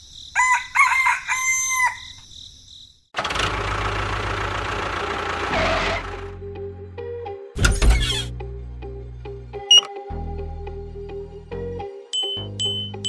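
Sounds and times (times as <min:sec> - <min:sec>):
rooster crowing: 0:00.4 - 0:02.2
engine running: 0:03.2 - 0:06.6.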